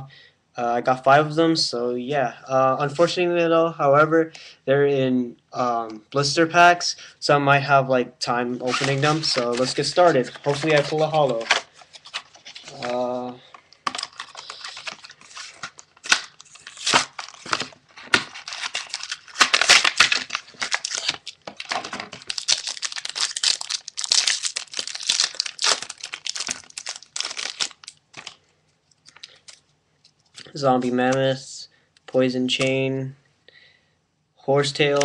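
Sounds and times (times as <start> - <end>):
plastic packaging crinkling and tearing: 8.6 - 30.6.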